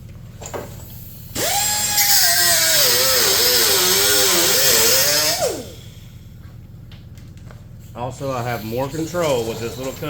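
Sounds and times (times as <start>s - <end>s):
cutoff wheel grinding sheet metal: 1.4s - 5.8s.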